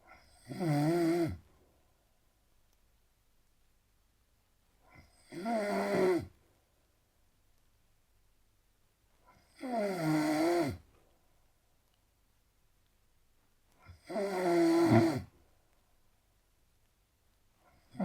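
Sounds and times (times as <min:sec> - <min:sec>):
man snoring heavily: 0:00.4 - 0:01.4, 0:05.3 - 0:06.3, 0:09.6 - 0:10.8, 0:14.0 - 0:15.3.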